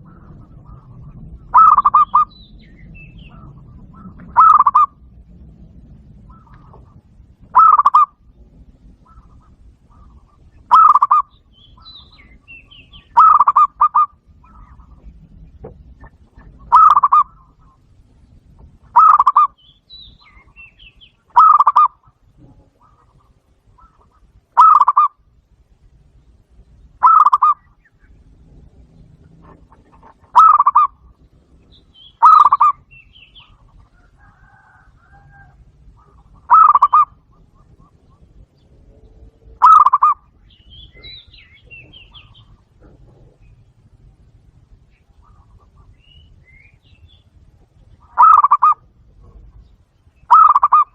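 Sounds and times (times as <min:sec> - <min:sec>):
faint bird chirps: 0:00.0 - 0:05.0, 0:08.8 - 0:50.9
dove cooing: 0:00.0 - 0:18.0, 0:18.6 - 0:19.6, 0:20.2 - 0:25.4, 0:26.8 - 0:46.8, 0:47.4 - 0:50.9.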